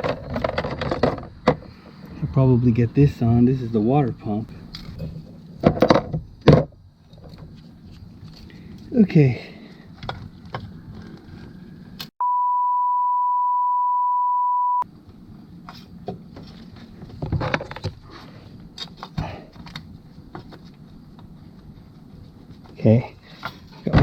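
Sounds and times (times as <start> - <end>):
censor bleep tone: 12.2 - 14.8.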